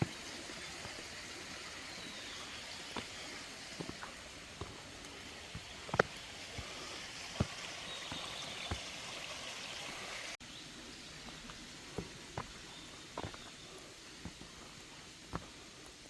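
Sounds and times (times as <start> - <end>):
stream rushing: 0.0 - 10.4.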